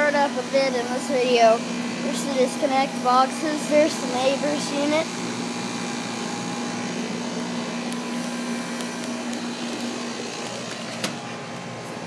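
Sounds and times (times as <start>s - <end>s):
air conditioner fan rush: 0.0s - 12.0s
constant low hum: 0.0s - 12.0s.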